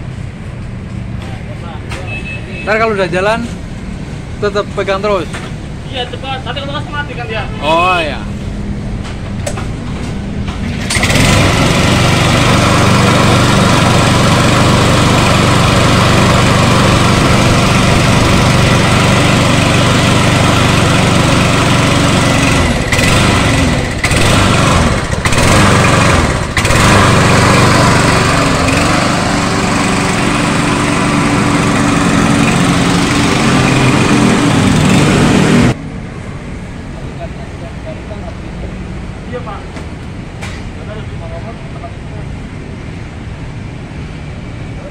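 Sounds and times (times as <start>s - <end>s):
lawn mower engine running: 9.4s - 35.8s.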